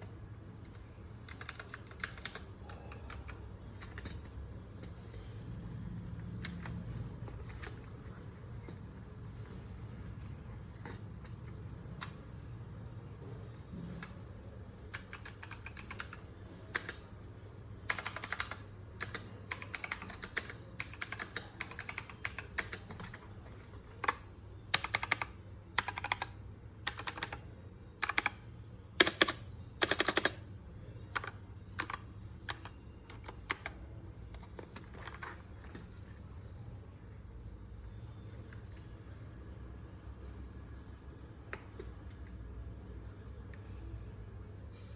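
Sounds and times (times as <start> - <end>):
mechanical keyboard typing: 0.6 - 5.3, 6.2 - 8.8, 13.9 - 17.1, 17.8 - 28.4, 29.0 - 36.0.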